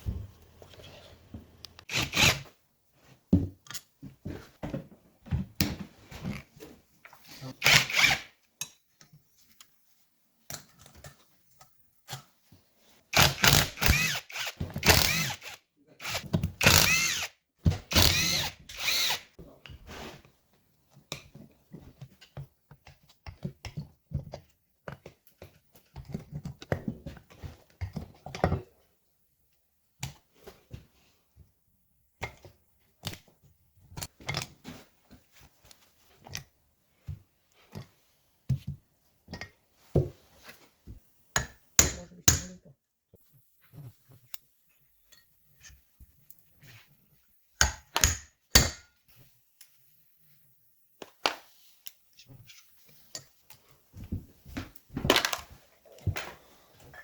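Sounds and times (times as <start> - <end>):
power tool running: 13.2 - 17.3, 17.9 - 19.2.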